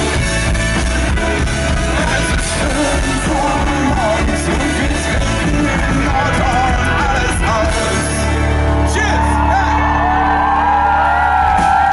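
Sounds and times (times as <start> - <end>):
bass guitar: 0.0 - 11.9
live pop-rock band: 0.0 - 11.9
person singing: 1.8 - 8.5.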